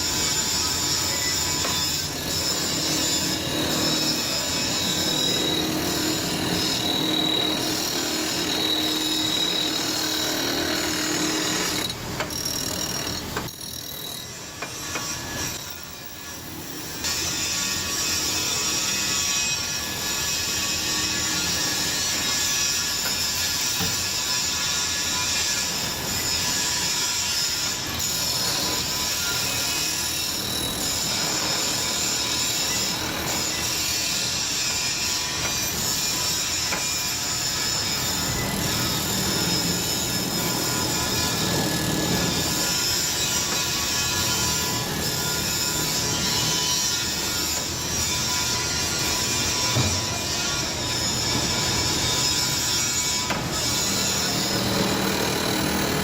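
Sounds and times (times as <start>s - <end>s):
wheel grinders grinding metal: 0.0s - 56.0s.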